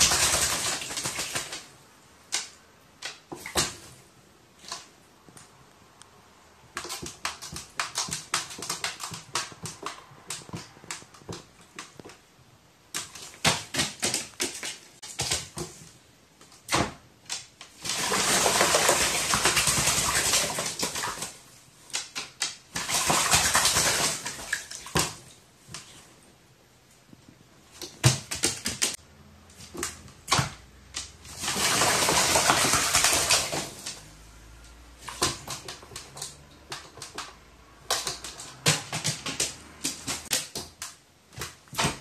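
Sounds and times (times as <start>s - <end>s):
wings flapping in water: 0.0s - 1.8s, 17.8s - 25.9s, 31.2s - 34.2s
bird splashing in water: 0.0s - 4.0s, 17.7s - 25.8s, 29.6s - 40.8s.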